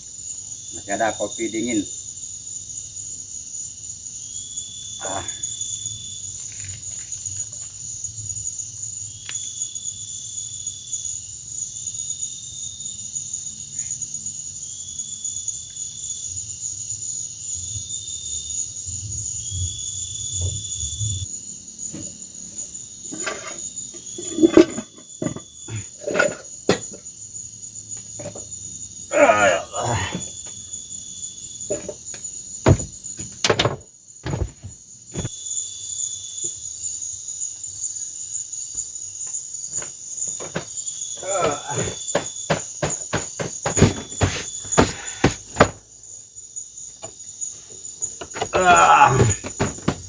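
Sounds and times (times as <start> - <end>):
insects chirring drone: 0.0 - 50.0
lower insect call: 0.0 - 50.0
soft knocks: 32.6 - 35.3, 49.2 - 50.0.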